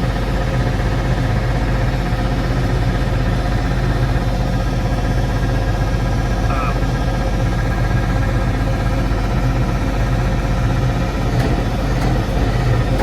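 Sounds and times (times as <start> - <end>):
tractor engine idling: 0.0 - 13.0.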